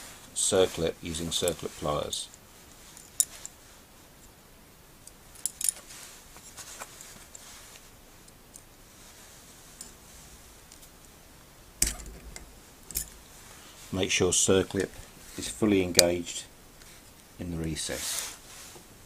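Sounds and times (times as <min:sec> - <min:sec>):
metallic clicks of pliers and circlip: 0:11.8 - 0:13.2.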